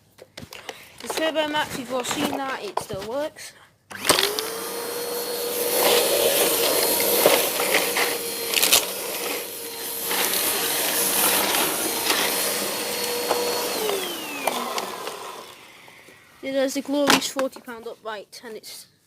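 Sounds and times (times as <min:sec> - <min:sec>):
vacuum cleaner running: 0:03.9 - 0:16.6.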